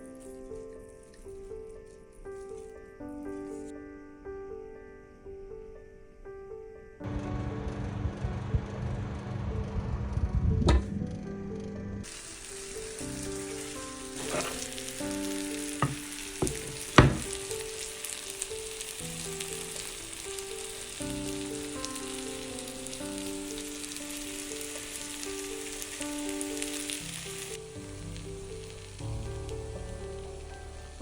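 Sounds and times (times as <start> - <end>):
food sizzling in a pan: 12.0 - 31.0
utensil knocking: 14.2 - 14.7, 15.8 - 17.6.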